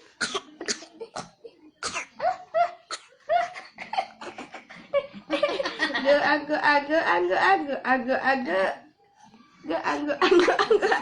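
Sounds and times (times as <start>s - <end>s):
small child coughing: 0.2s - 4.1s.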